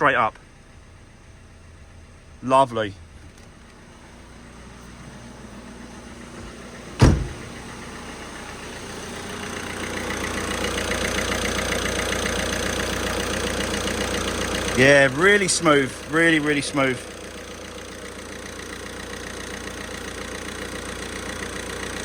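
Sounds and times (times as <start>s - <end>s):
car engine idling: 0.0s - 22.0s
sharp knock: 7.0s - 7.6s.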